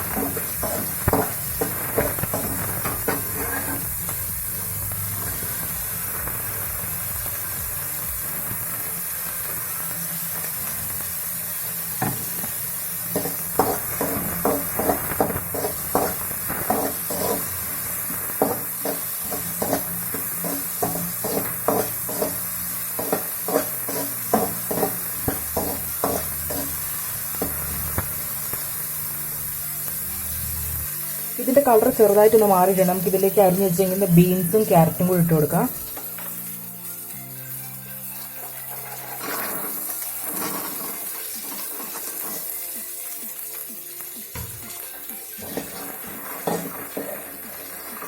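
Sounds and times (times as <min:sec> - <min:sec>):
spatula scraping a pan: 0:00.0 - 0:04.2, 0:13.1 - 0:28.6, 0:38.2 - 0:42.7, 0:45.4 - 0:48.0
onion sizzling in oil: 0:00.0 - 0:48.0.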